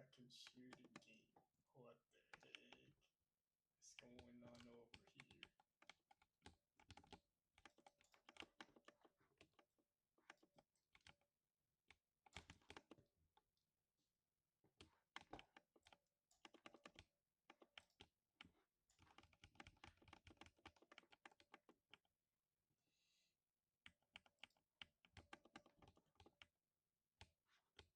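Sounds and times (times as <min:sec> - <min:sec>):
mechanical keyboard typing: 0:04.0 - 0:09.7, 0:12.2 - 0:13.0, 0:14.8 - 0:22.1, 0:23.8 - 0:26.5.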